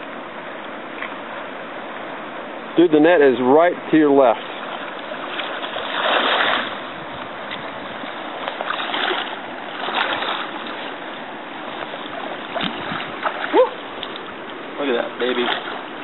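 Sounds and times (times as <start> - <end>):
river water rushing: 0.0 - 16.0.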